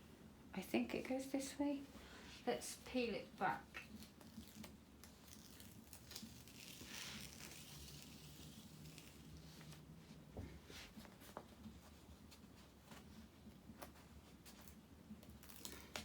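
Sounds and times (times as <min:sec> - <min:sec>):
plastic film crinkling and clicking: 0:03.7 - 0:09.4, 0:14.5 - 0:16.0
plastic rustle: 0:03.7 - 0:10.0, 0:10.8 - 0:16.0.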